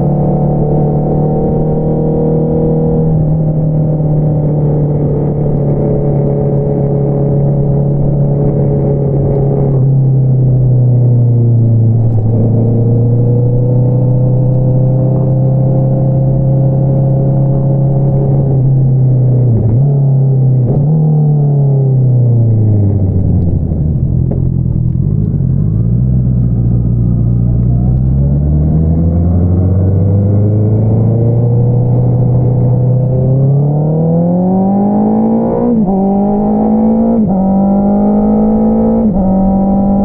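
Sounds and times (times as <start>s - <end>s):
motorcycle engine running: 22.0s - 33.4s.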